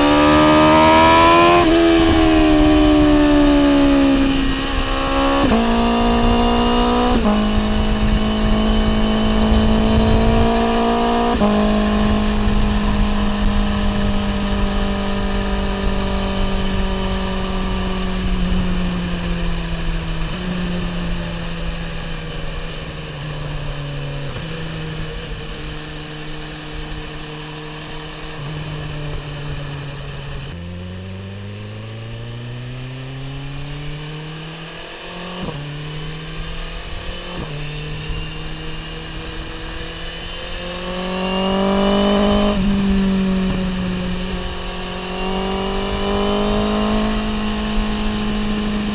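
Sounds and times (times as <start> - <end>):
wind rush: 0.0 - 20.4
motorcycle engine: 0.0 - 48.9.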